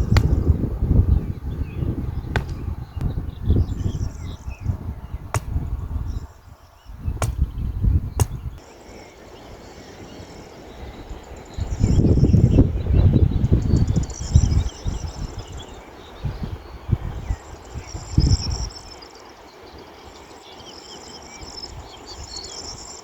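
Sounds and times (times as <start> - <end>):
low rumbling bursts: 0.0 - 6.3.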